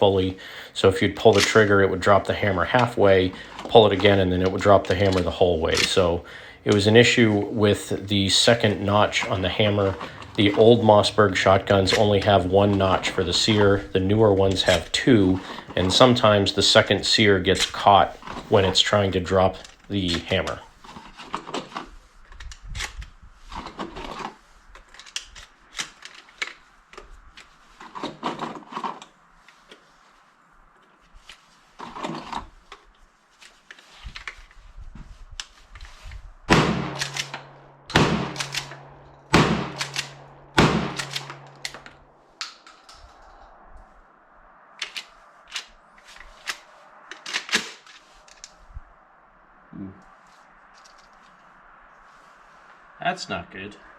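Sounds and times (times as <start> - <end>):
shotgun clicks and clacks: 1.2 - 1.7, 2.6 - 6.1, 36.5 - 43.0, 46.3 - 48.5
sharp gunshot bangs: 36.5 - 42.0.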